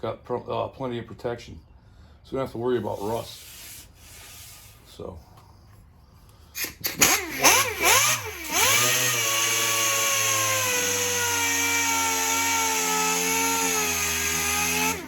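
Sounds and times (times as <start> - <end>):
power sanding tool spinning: 6.9 - 15.0.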